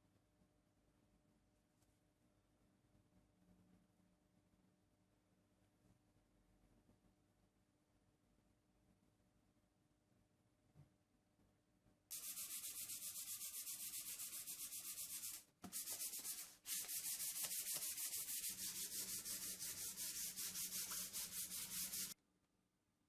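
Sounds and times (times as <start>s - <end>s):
sandpaper rubbing on wood: 12.1s - 22.2s.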